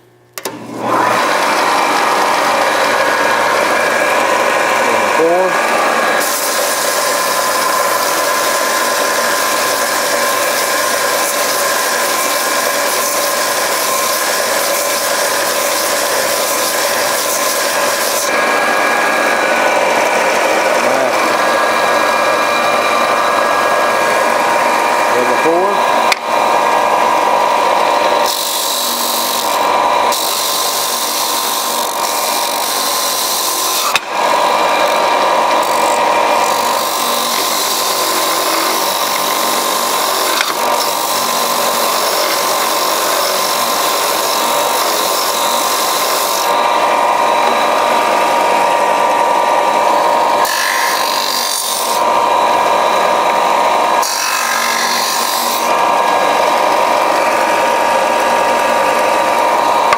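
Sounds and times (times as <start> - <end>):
sander motor humming: 0.0 - 59.9
abrasive rasping on wood: 28.2 - 46.6.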